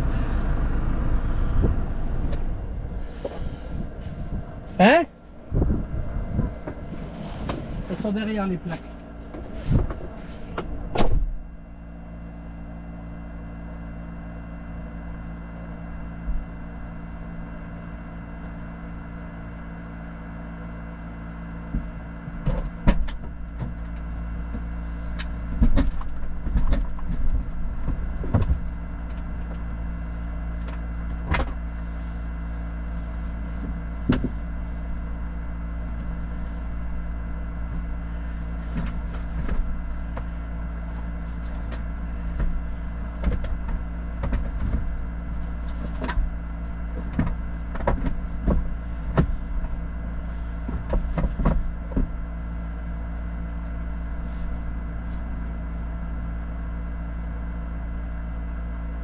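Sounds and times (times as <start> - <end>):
car engine idling: 0.0 - 22.2
knocks and clunks: 33.6 - 34.5.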